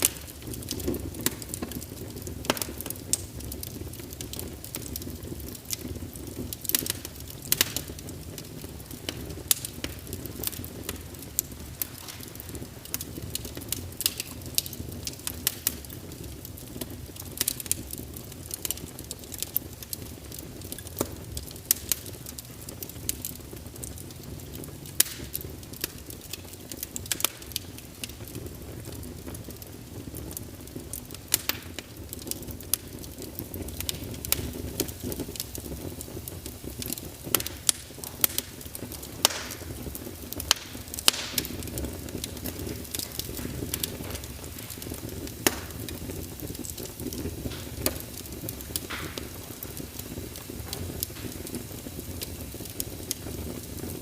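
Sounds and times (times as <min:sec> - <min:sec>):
fireplace fire crackling: 0:00.0 - 0:54.0.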